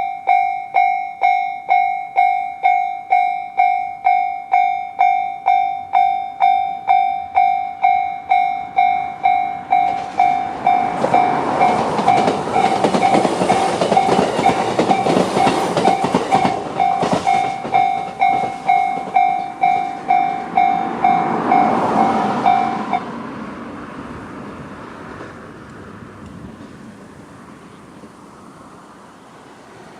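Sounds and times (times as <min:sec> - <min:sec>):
level-crossing warning bell: 0:00.0 - 0:23.1
train wheels clattering: 0:09.3 - 0:22.7.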